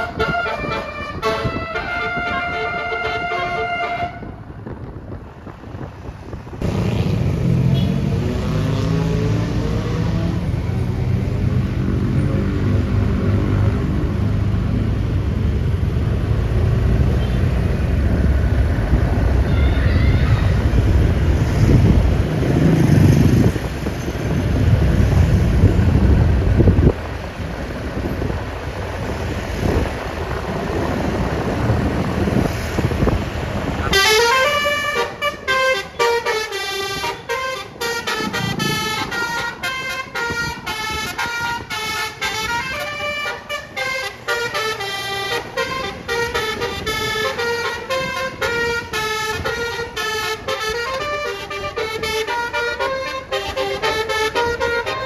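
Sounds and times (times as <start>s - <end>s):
musical bus horn melody: 0.0s - 4.5s, 33.8s - 55.0s
large vehicle engine rumbling: 0.0s - 55.0s.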